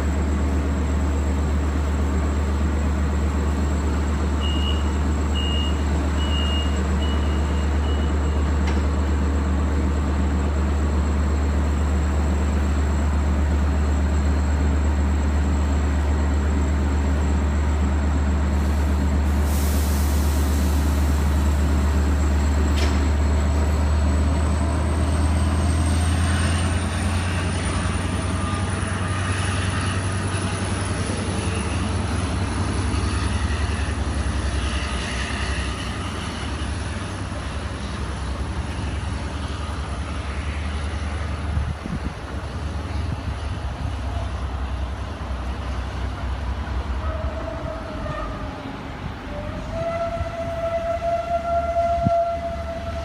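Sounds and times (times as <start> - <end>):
diesel locomotive drone: 0.0 - 53.0
air hiss: 18.6 - 21.4.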